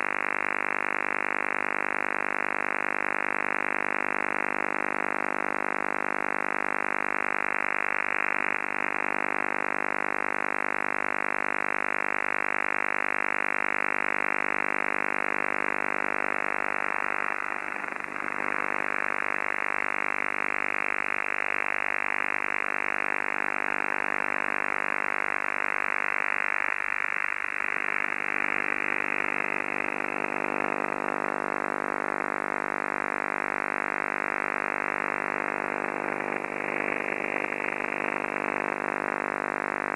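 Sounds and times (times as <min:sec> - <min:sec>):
radio buzzing transmission: 0:15.6 - 0:39.9.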